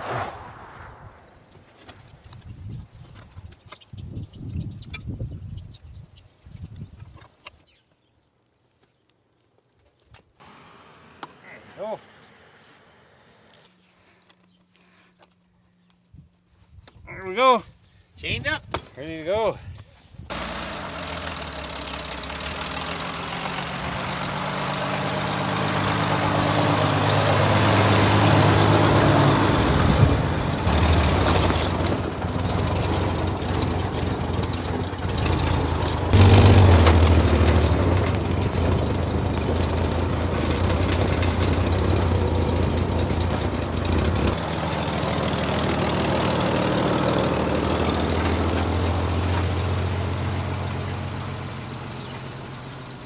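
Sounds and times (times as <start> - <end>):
car engine pulling through snow: 0.0 - 2.0, 10.4 - 13.8, 20.3 - 53.0.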